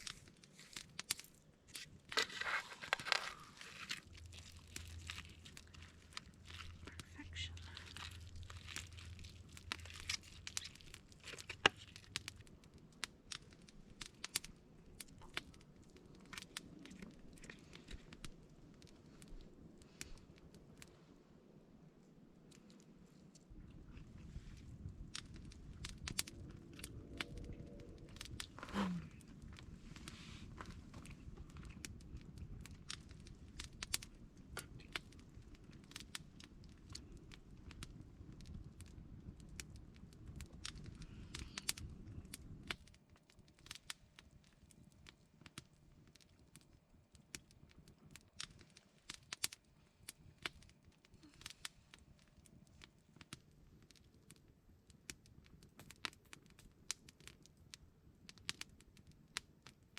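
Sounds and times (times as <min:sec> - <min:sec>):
campfire crackling and popping: 0:00.0 - 0:59.9
low rushing background: 0:26.2 - 0:28.7.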